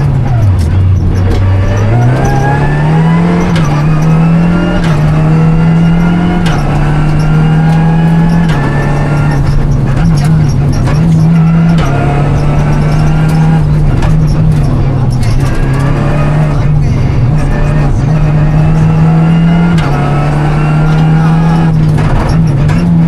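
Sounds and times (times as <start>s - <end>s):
car engine at high revs: 0.0s - 23.0s.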